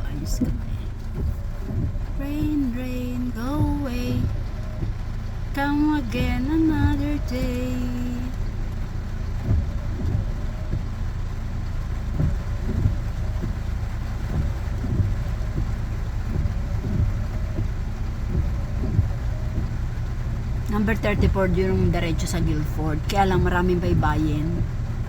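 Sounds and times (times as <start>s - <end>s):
soft bumps: 0.0s - 5.0s, 9.4s - 11.2s, 12.0s - 25.0s
car cabin road rumble: 0.0s - 25.0s.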